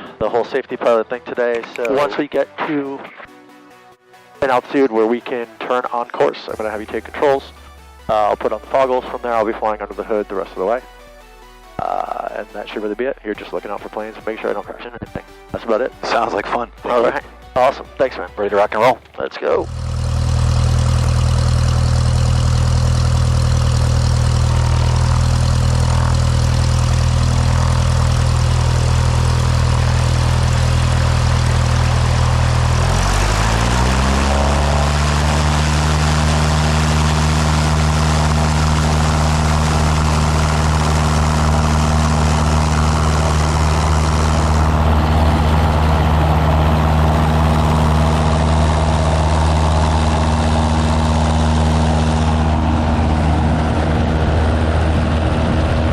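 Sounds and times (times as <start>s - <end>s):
light aircraft engine and propeller: 6.5s - 13.0s, 19.6s - 55.9s.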